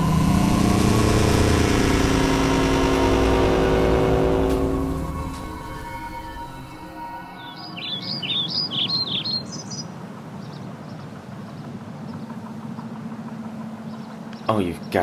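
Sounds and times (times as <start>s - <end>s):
low hum: 0.0s - 7.8s
songbird chirping: 1.4s - 15.0s.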